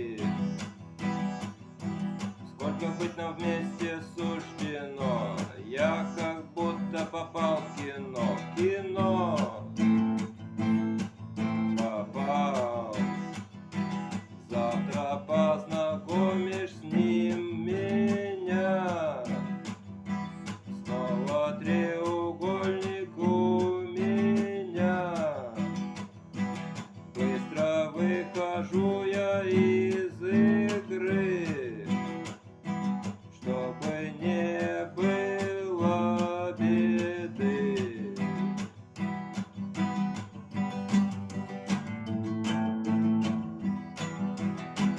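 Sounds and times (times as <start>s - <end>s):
sliding lead guitar melody: 0.0s - 44.9s
strummed acoustic guitar chords: 0.0s - 44.9s.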